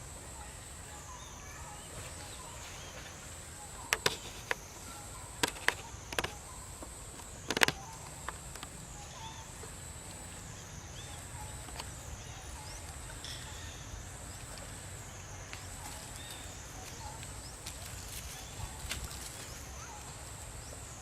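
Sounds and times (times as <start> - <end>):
high insect drone: 0.0 - 21.0
sharp clicks or snaps: 3.9 - 4.7, 5.4 - 6.4, 7.2 - 8.7.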